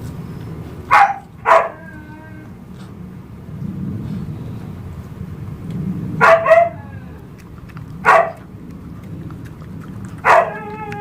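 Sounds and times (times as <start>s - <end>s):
small dog barking: 0.9s - 1.8s, 6.2s - 6.8s, 8.0s - 8.5s, 10.1s - 11.0s.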